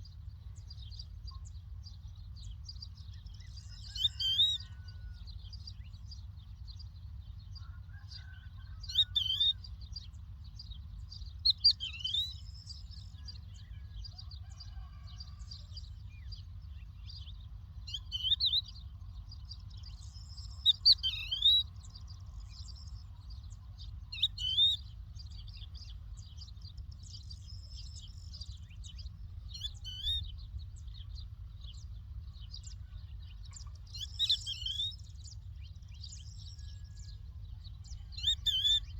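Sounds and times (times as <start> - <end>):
lark whistled calls: 3.4 - 5.1, 8.2 - 9.6, 11.5 - 12.8, 17.9 - 18.8, 20.0 - 21.8, 24.0 - 24.9, 27.2 - 30.9, 32.7 - 37.3, 37.9 - 38.9
low rumble: 18.6 - 38.2.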